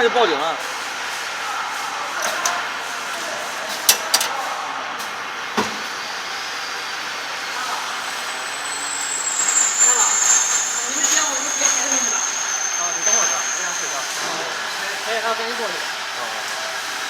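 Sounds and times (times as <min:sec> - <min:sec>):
sharp clicks and knocks: 0:03.9 - 0:04.4
factory machinery hiss: 0:05.4 - 0:17.0.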